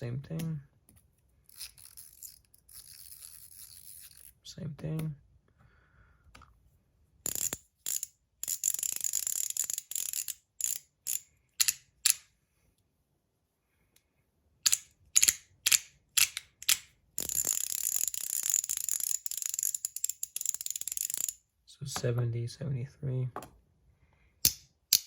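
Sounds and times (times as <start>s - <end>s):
metal fidget slider clicking: 7.3s - 12.3s, 14.6s - 21.4s.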